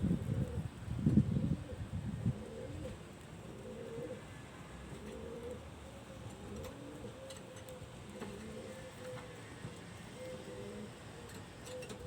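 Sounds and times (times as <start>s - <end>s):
pigeons cooing: 1.4s - 4.3s, 5.0s - 5.6s, 6.4s - 9.2s, 10.2s - 12.0s.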